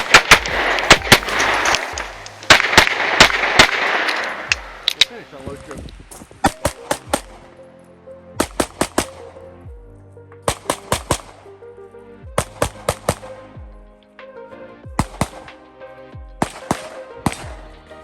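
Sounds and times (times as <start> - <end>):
pistol shots: 0.0 - 5.1, 6.4 - 7.5, 8.4 - 9.3, 10.5 - 11.4, 12.4 - 13.4, 15.0 - 15.6, 16.4 - 17.8
background music: 0.0 - 18.0.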